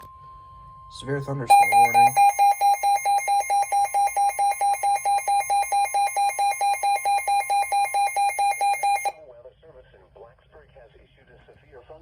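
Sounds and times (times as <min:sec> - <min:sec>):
harsh buzzy alert beeping: 0:00.9 - 0:09.2.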